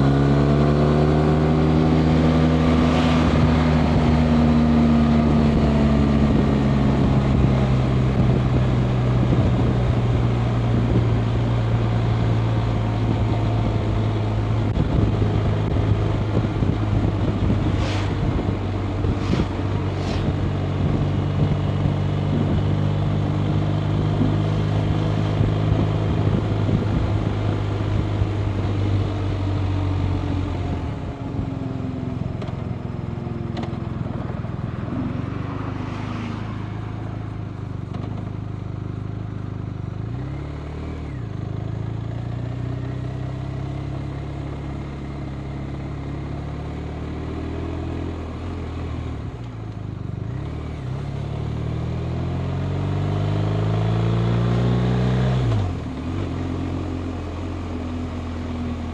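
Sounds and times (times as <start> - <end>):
motorcycle engine running: 0.0 - 36.1
wind noise: 1.5 - 12.0, 12.8 - 29.2.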